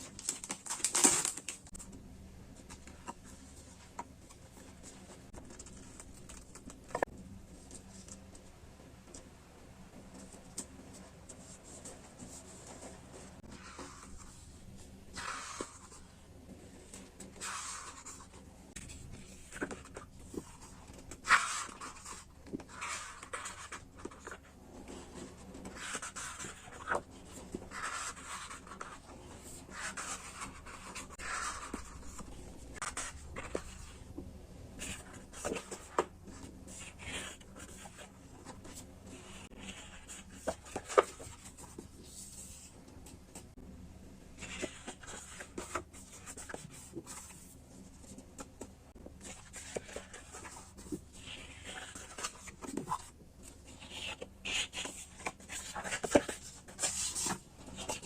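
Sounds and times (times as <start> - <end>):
packaging rustling and crinkling: 0.0 - 1.8.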